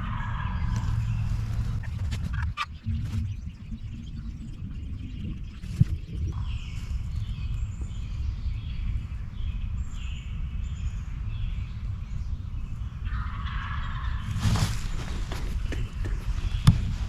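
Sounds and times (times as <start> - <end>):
wild turkey gobbling: 0.0 - 8.0, 9.3 - 17.0
short high bird calls: 0.0 - 10.4
steady low rumble: 0.0 - 17.0.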